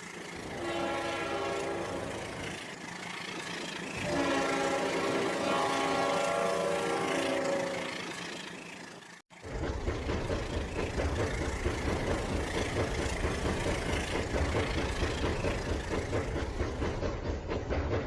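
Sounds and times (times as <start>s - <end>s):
train engine rumbling: 0.0s - 18.0s
train horn: 0.4s - 2.6s, 4.0s - 8.2s.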